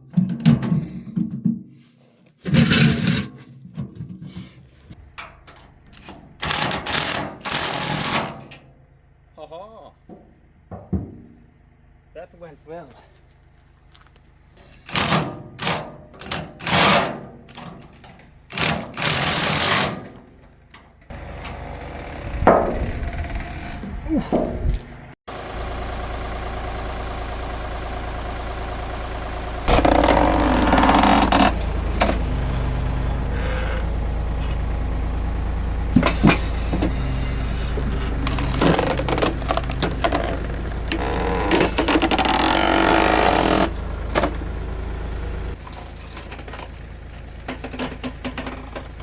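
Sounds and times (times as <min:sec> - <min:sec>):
engine running: 0:10.0 - 0:49.0.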